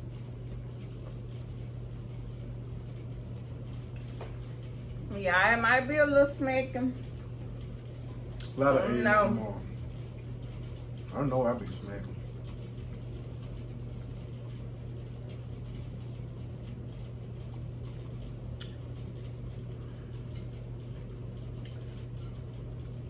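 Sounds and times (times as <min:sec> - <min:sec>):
steady low hum: 0:00.0 - 0:23.0
close-up chewing and mouth smacking: 0:03.3 - 0:04.8, 0:07.3 - 0:08.6, 0:17.4 - 0:22.6.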